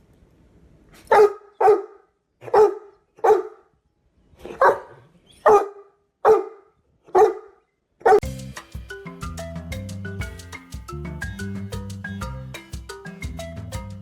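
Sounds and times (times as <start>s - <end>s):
dog barking: 1.1s - 3.7s, 4.5s - 8.2s.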